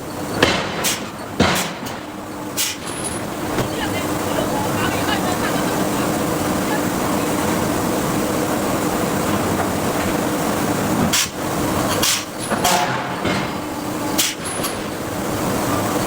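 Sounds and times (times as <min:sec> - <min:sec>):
machinery noise: 0:00.0 - 0:16.0
forging hammer blows on steel: 0:12.0 - 0:14.7.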